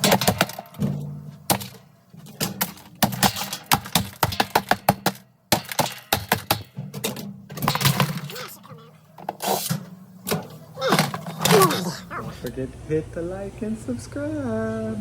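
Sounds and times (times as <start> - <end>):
hammer striking plastic: 0.0 - 7.8.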